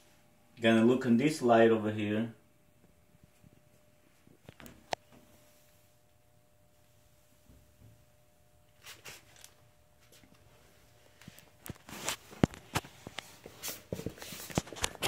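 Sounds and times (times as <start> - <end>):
rustling: 8.7 - 15.0.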